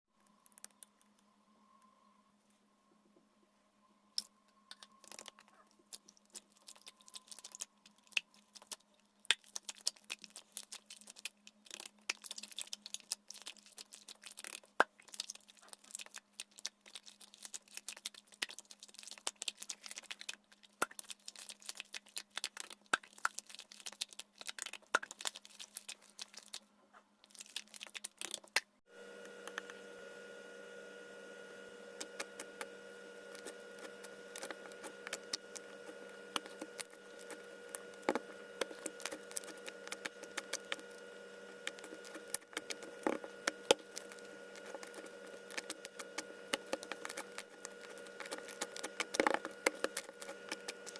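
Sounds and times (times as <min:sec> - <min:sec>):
steady hum: 0:28.9 - 0:50.9.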